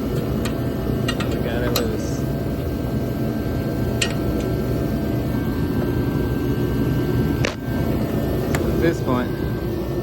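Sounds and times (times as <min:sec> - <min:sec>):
steady low fan rumble: 0:00.0 - 0:10.0.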